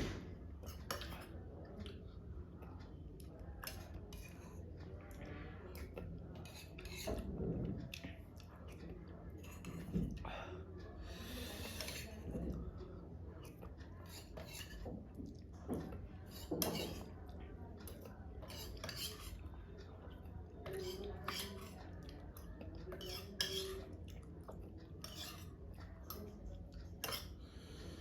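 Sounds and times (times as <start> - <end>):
cutlery clinking on a plate: 5.8 - 7.6, 14.1 - 14.9, 15.7 - 17.2, 17.8 - 19.3, 20.7 - 21.8, 22.9 - 23.9, 25.0 - 25.5, 27.0 - 27.4.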